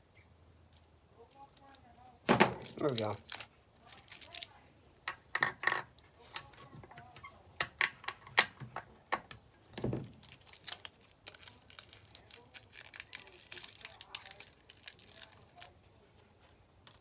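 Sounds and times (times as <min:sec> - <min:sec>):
plastic packaging crinkling: 0:00.8 - 0:04.6, 0:10.0 - 0:17.0.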